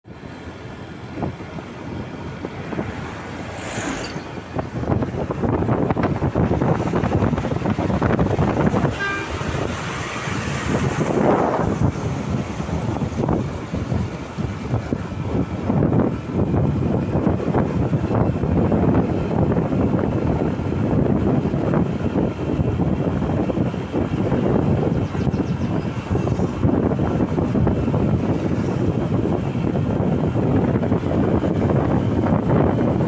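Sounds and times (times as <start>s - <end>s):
traffic rushing and rumbling: 0.0s - 33.0s
short horn toot: 8.7s - 9.5s.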